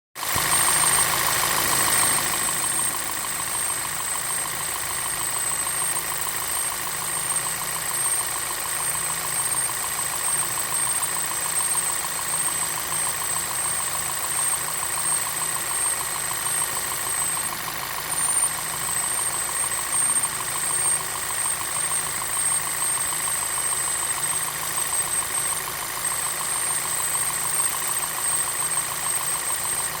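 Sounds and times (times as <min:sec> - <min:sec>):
car engine idling with rattle: 0:00.2 - 0:30.0.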